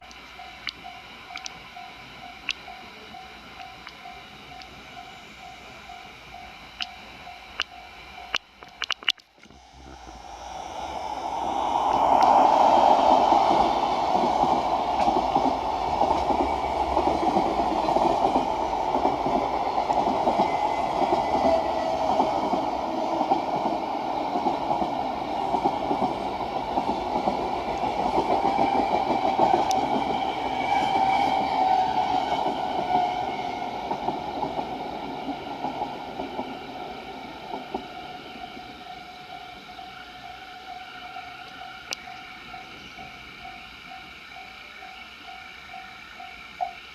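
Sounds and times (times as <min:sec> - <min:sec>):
sharp clicks: 0:00.0 - 0:01.6, 0:08.3 - 0:09.5
freight train passing: 0:00.0 - 0:46.9.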